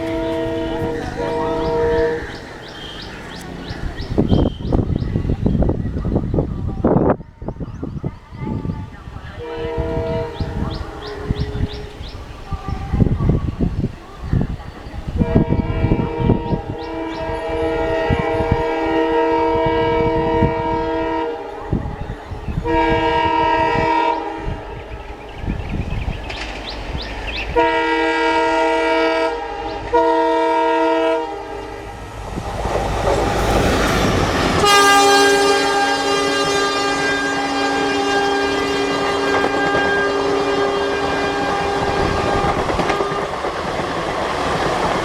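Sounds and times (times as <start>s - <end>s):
locomotive air horn: 0.0s - 3.4s, 9.4s - 12.0s, 15.2s - 24.9s, 27.6s - 32.2s, 33.1s - 43.4s
passing train rush: 0.0s - 45.0s.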